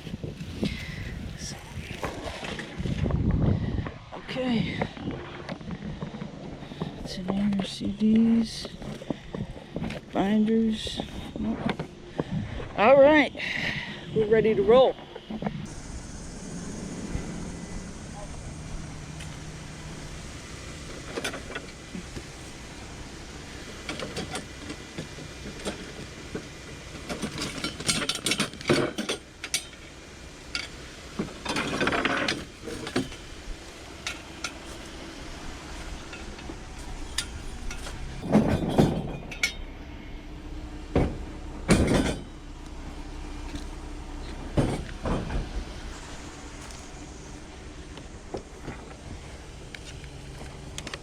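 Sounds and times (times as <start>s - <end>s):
objects clattering: 23.7s - 29.9s, 35.6s - 39.8s, 41.0s - 42.4s, 43.5s - 47.0s.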